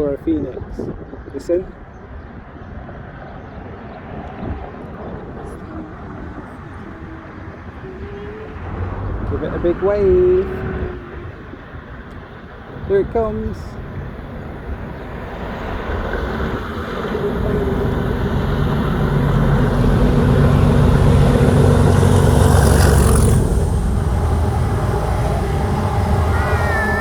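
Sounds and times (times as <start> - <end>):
rush of passing train: 2.8 - 27.0
diesel locomotive engine running: 13.8 - 27.0.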